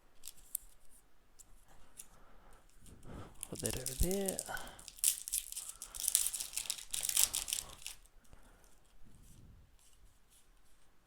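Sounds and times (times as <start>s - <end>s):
foil wrapper crinkling and tearing: 0.2s - 0.8s, 3.4s - 8.1s.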